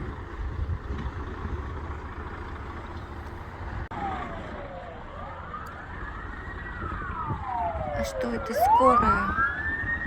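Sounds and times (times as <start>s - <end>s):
street traffic rumble: 0.0s - 10.0s
ambulance siren: 3.9s - 10.0s.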